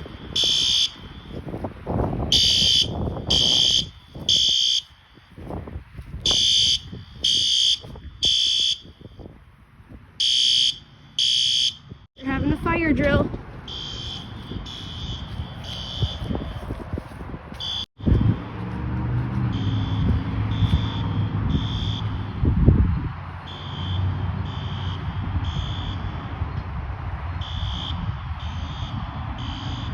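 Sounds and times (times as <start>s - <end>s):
fire alarm beeps: 0.0s - 1.5s, 2.3s - 5.3s, 6.2s - 9.2s, 10.2s - 12.1s, 13.7s - 16.4s, 17.6s - 17.9s, 19.5s - 22.1s, 23.5s - 26.1s, 27.4s - 29.9s
steady low rumble: 24.2s - 29.5s.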